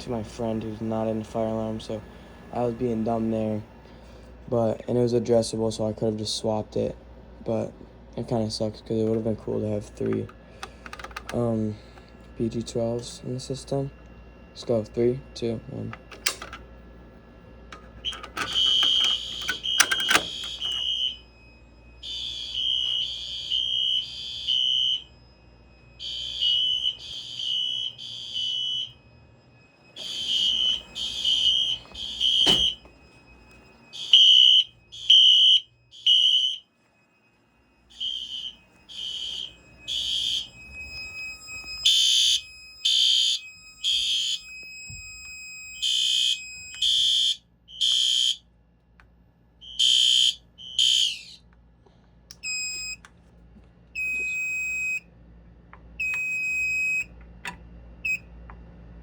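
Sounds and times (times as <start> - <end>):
fire alarm horn blasts: 8.3 - 16.6, 17.2 - 48.5, 49.6 - 53.1, 54.0 - 55.1, 56.0 - 57.1, 58.0 - 58.2.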